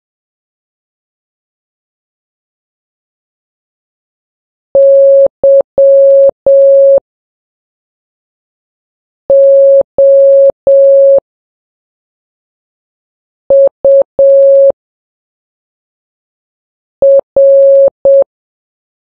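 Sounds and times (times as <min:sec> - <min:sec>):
morse code beeps: 0:04.8 - 0:07.0, 0:09.3 - 0:11.2, 0:13.5 - 0:14.7, 0:17.0 - 0:18.2.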